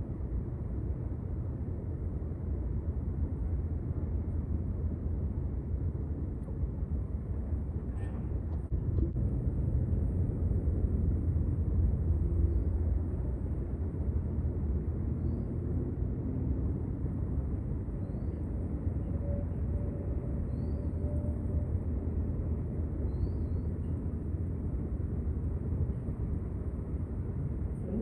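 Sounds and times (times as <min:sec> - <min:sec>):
low outdoor rumble: 0:00.0 - 0:28.0.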